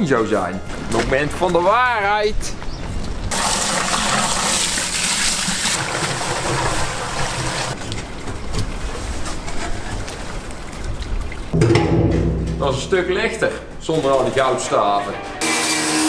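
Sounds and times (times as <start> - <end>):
liquid gushing from tank: 3.3 - 7.8.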